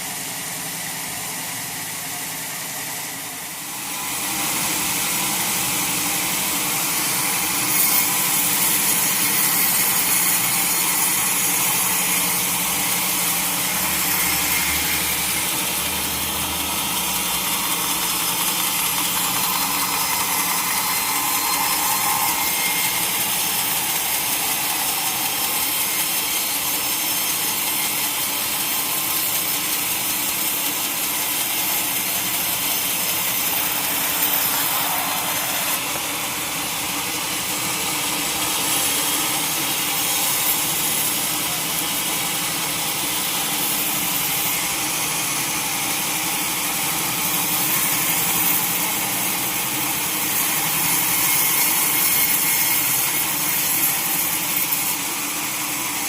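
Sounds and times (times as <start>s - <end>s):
saw cutting hiss: 0.0s - 56.0s
machine hum: 10.4s - 38.4s.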